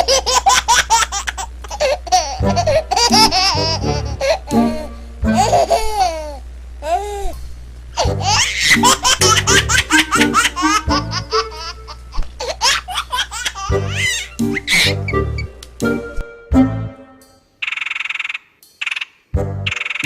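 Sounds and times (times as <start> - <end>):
high-pitched giggling laughter: 0.0 - 7.0, 8.0 - 15.1
background music with low bass: 2.1 - 17.4, 19.4 - 20.0.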